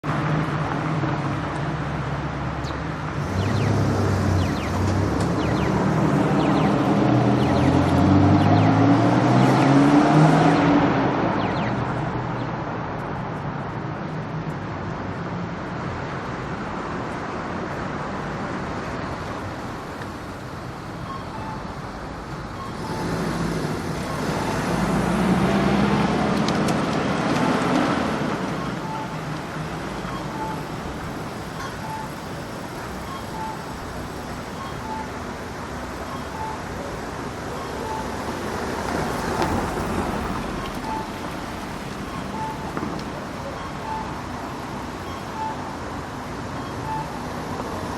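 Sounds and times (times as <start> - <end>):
steady traffic hum: 0.0 - 47.9
vehicles accelerating: 0.0 - 47.9
crossing signal beeps: 3.3 - 12.4, 20.8 - 25.0, 27.4 - 47.9.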